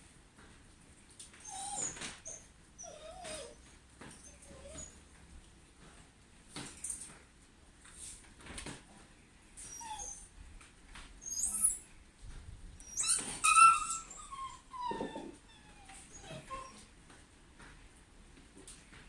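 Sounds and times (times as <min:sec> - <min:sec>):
dog whining and whimpering: 0:01.4 - 0:05.0, 0:09.6 - 0:10.4, 0:11.2 - 0:11.9, 0:12.8 - 0:16.9.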